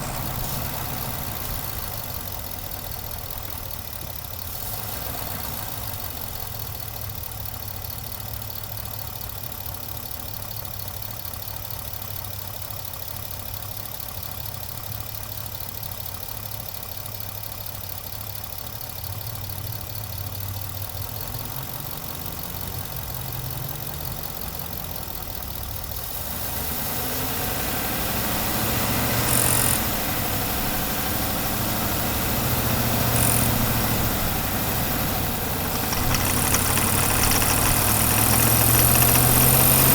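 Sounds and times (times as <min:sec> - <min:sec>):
truck engine running: 0:00.0 - 0:04.3, 0:31.4 - 0:39.9.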